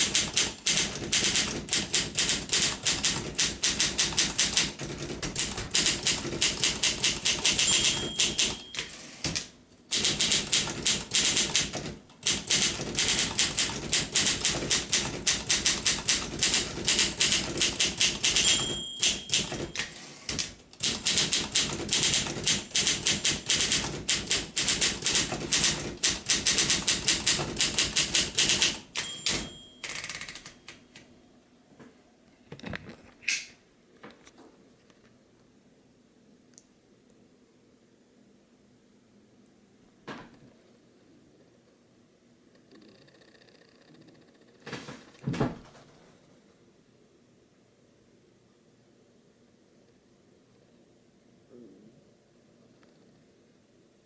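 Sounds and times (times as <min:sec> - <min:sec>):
typewriter key strikes: 0:00.0 - 0:30.8
typewriter margin bell ringing: 0:05.8 - 0:09.2, 0:16.1 - 0:20.1, 0:27.8 - 0:30.8.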